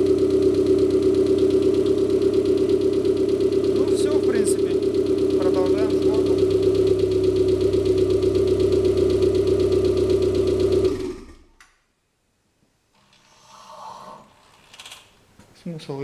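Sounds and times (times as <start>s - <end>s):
car engine idling: 0.0s - 11.6s.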